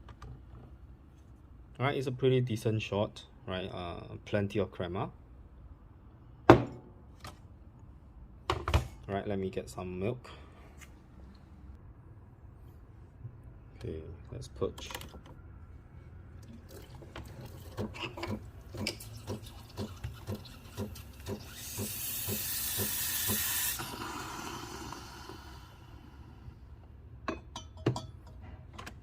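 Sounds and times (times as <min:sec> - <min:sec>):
steam hissing: 0:21.5 - 0:26.4.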